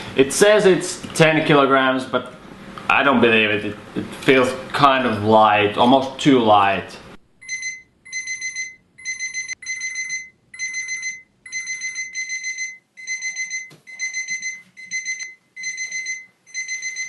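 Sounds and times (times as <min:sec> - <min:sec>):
alarm clock beeping: 0:07.4 - 0:17.0.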